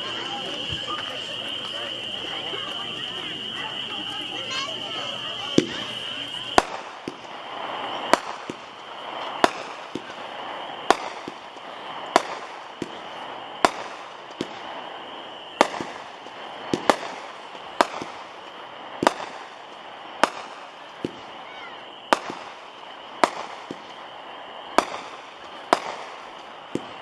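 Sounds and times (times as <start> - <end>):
firework hissing: 0.0 - 27.0
firework reports: 0.0 - 27.0.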